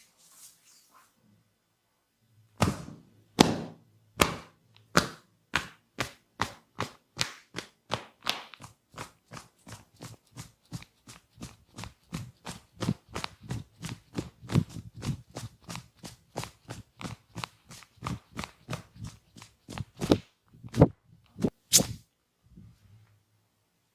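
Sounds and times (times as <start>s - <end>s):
hands slapping body: 2.6s - 9.5s.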